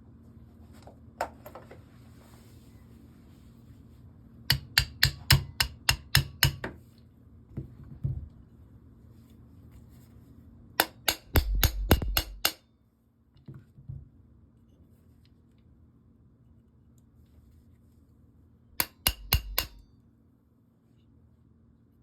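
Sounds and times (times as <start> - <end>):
hammer tapping metal pins: 4.5 - 6.8, 10.8 - 12.6, 18.8 - 19.8.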